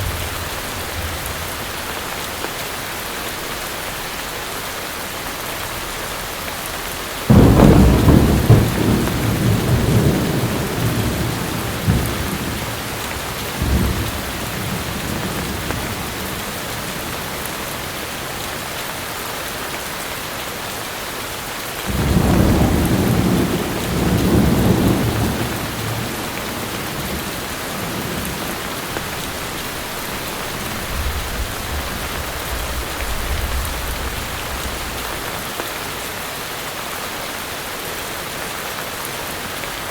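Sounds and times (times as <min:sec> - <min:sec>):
thunder rumbling: 0:00.0 - 0:02.8, 0:07.3 - 0:18.7, 0:21.9 - 0:35.5
heavy rain: 0:00.0 - 0:39.9.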